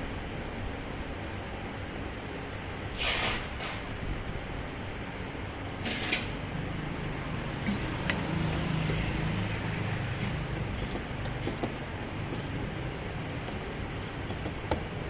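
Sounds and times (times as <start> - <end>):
metal tools clicking and clinking: 7.6 - 12.7.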